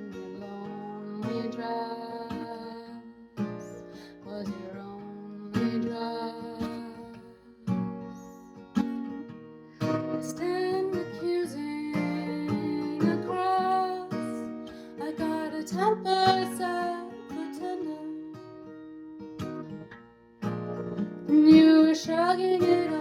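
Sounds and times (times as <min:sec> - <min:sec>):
woman singing: 0:00.0 - 0:08.5, 0:09.8 - 0:19.1, 0:21.2 - 0:23.0
acoustic guitar strumming: 0:00.0 - 0:23.0.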